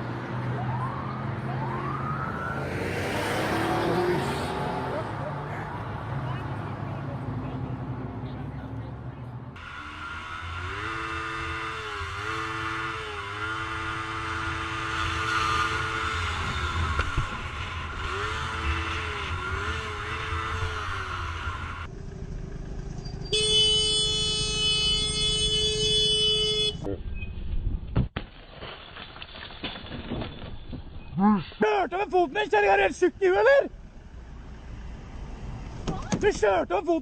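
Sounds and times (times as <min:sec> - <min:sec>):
road traffic rumble: 0:00.0 - 0:27.9, 0:30.4 - 0:37.0
car horn held: 0:23.3 - 0:26.9.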